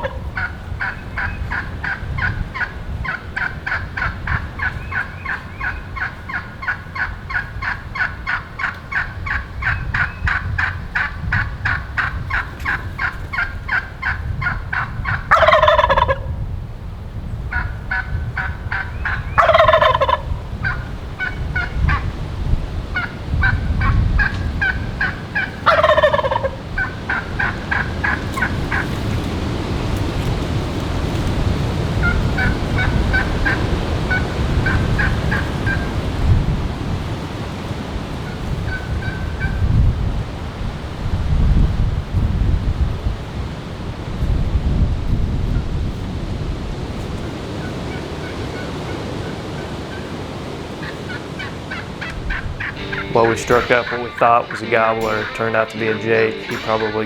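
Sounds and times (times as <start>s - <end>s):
turkey gobbling: 0.0s - 16.4s, 17.5s - 36.2s, 37.2s - 39.7s, 47.2s - 57.0s
wind rumble on microphone: 0.0s - 53.1s
fast repeated turkey notes: 23.0s - 28.9s, 52.6s - 57.0s.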